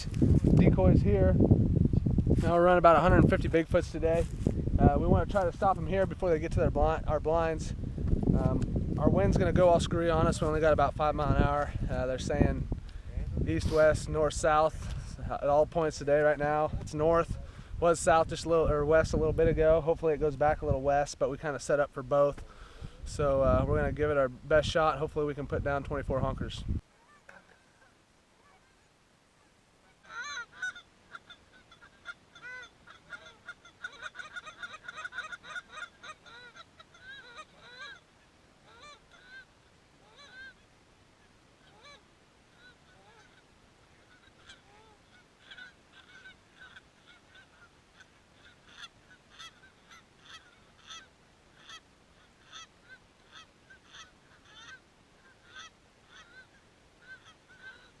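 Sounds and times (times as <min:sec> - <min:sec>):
geese honking: 0:29.8 - 0:58.0.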